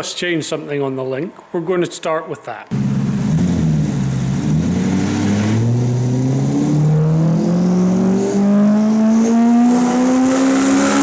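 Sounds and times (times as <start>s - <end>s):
turbocharged car engine revving: 2.7s - 11.0s.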